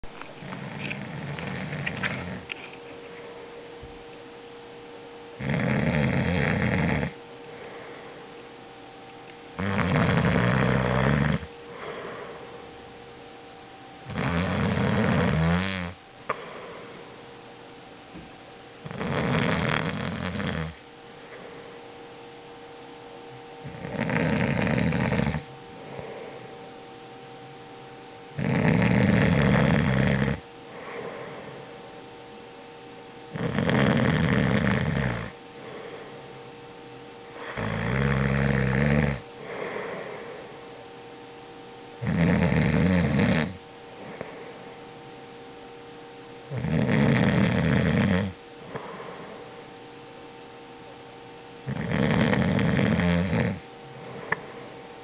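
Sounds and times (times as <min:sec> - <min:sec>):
faint steady hum: 0:00.0 - 0:55.0
quiet breathing: 0:00.2 - 0:04.0, 0:06.5 - 0:09.2, 0:10.0 - 0:13.2, 0:14.6 - 0:17.5, 0:19.8 - 0:28.6, 0:29.5 - 0:33.0, 0:34.6 - 0:41.1, 0:43.2 - 0:46.6, 0:48.2 - 0:51.8, 0:53.3 - 0:55.0
person snoring: 0:00.3 - 0:02.5, 0:05.4 - 0:08.2, 0:09.6 - 0:12.6, 0:14.1 - 0:17.1, 0:18.8 - 0:21.6, 0:23.6 - 0:26.5, 0:28.4 - 0:31.7, 0:33.3 - 0:36.3, 0:37.4 - 0:40.6, 0:42.0 - 0:44.7, 0:46.5 - 0:49.6, 0:51.6 - 0:54.8.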